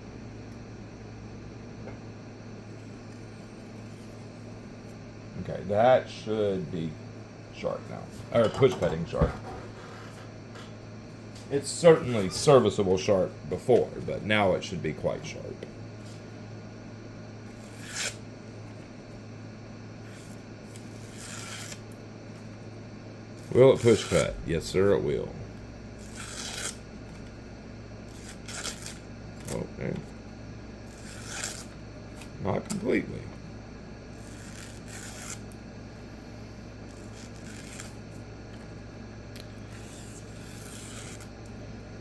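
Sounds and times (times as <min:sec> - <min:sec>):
low electrical hum: 0:00.0 - 0:42.0
rustling and scraping handling noises: 0:07.8 - 0:12.8
soft rubbing or scraping: 0:09.2 - 0:10.4
low hum: 0:24.1 - 0:28.6.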